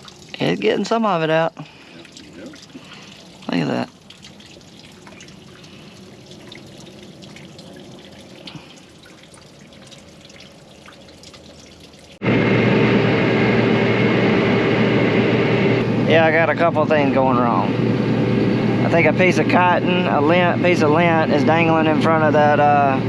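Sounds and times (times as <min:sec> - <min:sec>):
water dripping and trickling: 0:00.0 - 0:12.2
vehicle engine running loud: 0:12.2 - 0:23.0.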